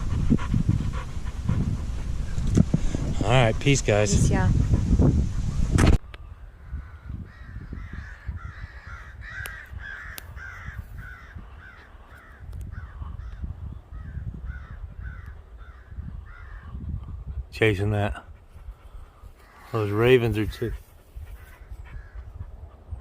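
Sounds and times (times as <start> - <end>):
ravens cawing: 6.4 - 13.4, 14.0 - 16.8, 19.1 - 19.7.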